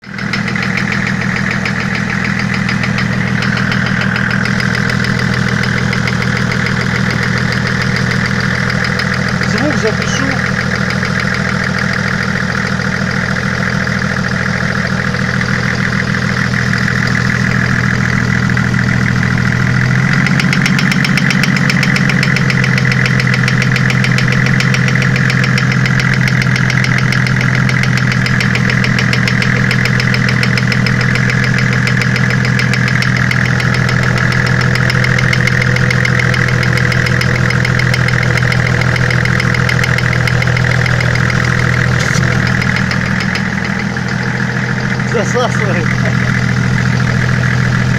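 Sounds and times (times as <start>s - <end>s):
diesel engine idling with knocking: 0.0s - 47.9s.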